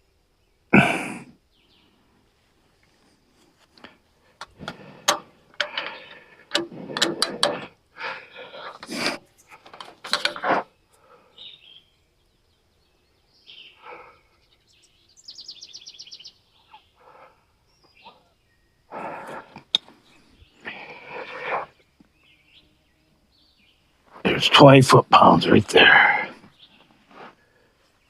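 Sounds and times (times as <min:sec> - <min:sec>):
even clicks: 0:04.4 - 0:07.8
knocks and metal clatter: 0:04.4 - 0:07.8.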